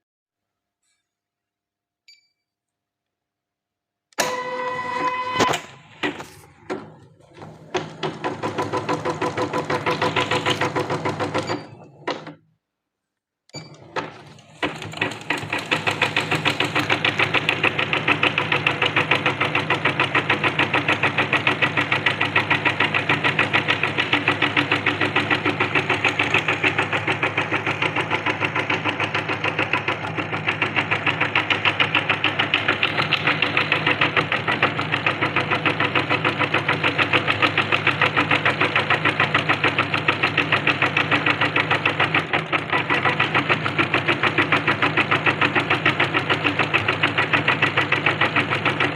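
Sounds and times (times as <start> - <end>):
embroidery machine stitching: 4.2 - 12.4, 13.6 - 48.9.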